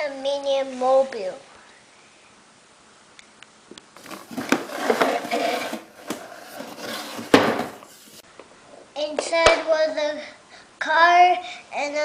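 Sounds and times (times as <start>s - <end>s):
toy and box rubbing and clattering: 4.0s - 8.2s.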